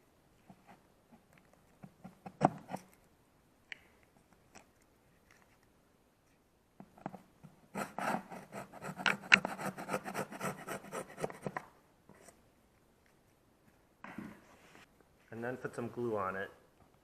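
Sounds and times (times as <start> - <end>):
chisel scraping wood: 7.8 - 11.6.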